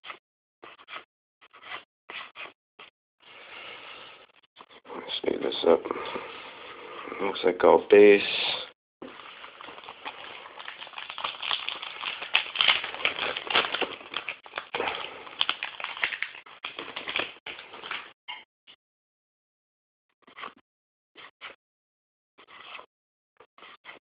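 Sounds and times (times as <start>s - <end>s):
card wrappers crackling: 9.5s - 18.0s.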